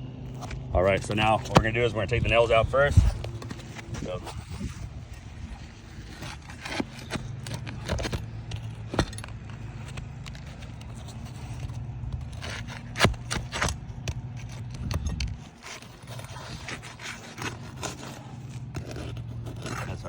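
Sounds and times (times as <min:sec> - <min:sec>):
low steady hum: 0:00.0 - 0:20.0
nails scraping against shingles: 0:00.3 - 0:20.0.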